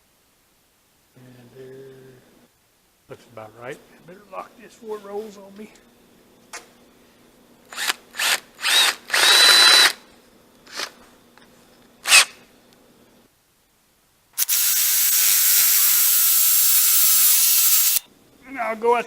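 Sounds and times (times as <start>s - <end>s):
power drill whining: 7.7s - 10.0s, 12.0s - 12.4s, 14.4s - 18.0s.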